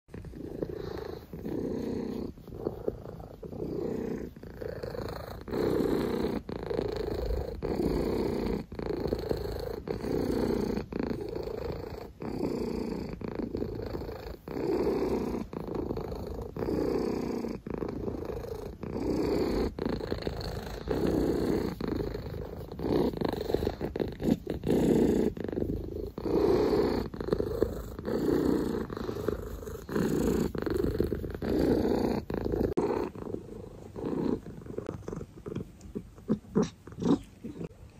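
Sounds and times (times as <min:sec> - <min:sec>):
cat purring: 0:00.1 - 0:37.9.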